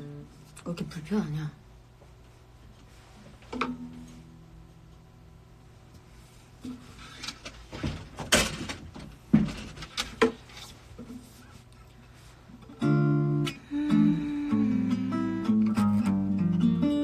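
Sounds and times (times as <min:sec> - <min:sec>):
acoustic guitar chords strummed: 0:03.5 - 0:05.3, 0:12.6 - 0:17.0.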